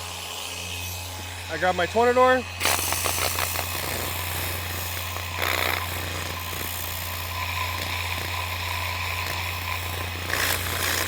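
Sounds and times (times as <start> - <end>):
compressed air hissing: 2.6 - 11.0.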